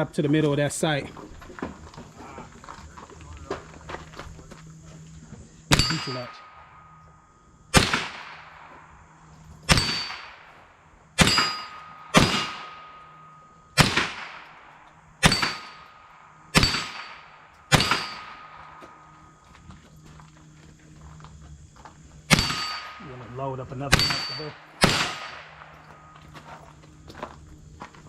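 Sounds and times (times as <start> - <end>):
rifle shots: 5.7 - 6.7, 7.7 - 8.9, 9.6 - 19.1, 22.3 - 23.2, 23.9 - 26.1.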